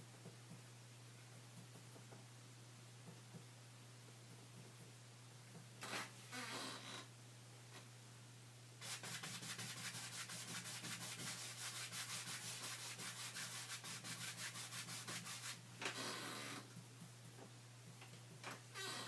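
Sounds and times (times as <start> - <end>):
rapid scrubbing strokes: 8.8 - 15.6.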